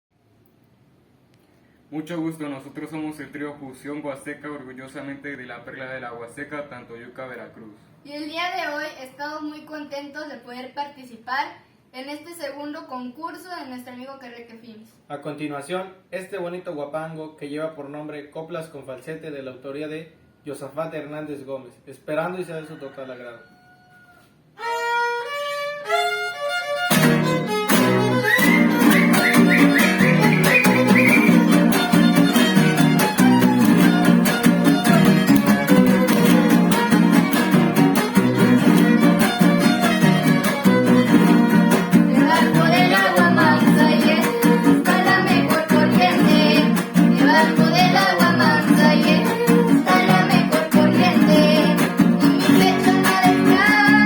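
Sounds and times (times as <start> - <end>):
strummed guitars: 24.6 - 54.0
violin melody: 24.6 - 54.0.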